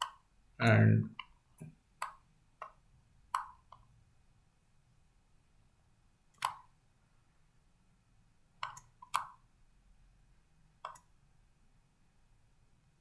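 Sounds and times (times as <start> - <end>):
computer mouse clicking: 2.0 - 3.9, 6.3 - 6.7, 8.6 - 9.4, 10.8 - 11.1.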